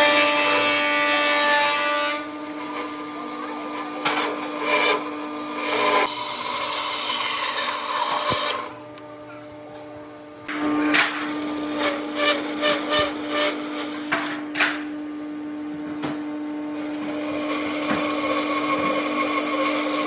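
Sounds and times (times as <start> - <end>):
power tool working wood: 0.0 - 8.8, 10.6 - 14.4, 16.7 - 20.0.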